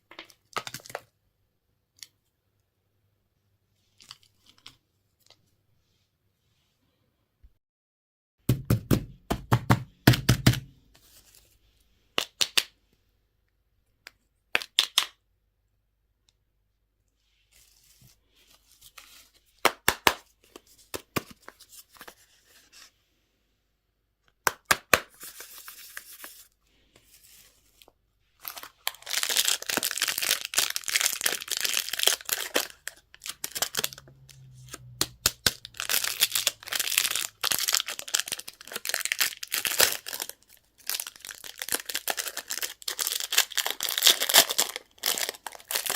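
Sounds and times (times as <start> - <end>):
candy wrappers crinkling and tearing: 0.1 - 1.1, 28.4 - 45.9.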